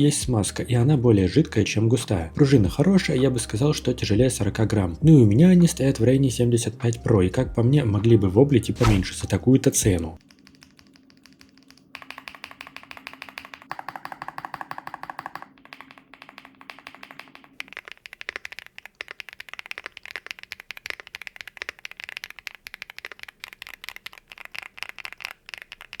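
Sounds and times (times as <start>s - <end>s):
mechanical keyboard typing: 10.2s - 26.0s.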